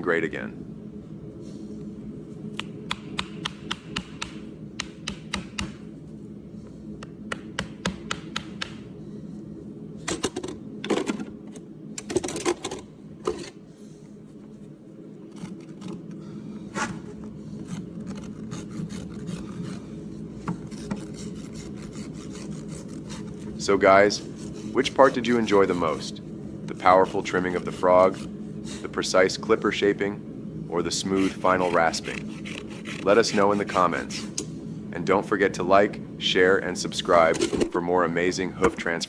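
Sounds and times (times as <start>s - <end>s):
rasp filing a hoof: 20.6s - 23.5s, 24.2s - 26.2s, 31.0s - 34.5s.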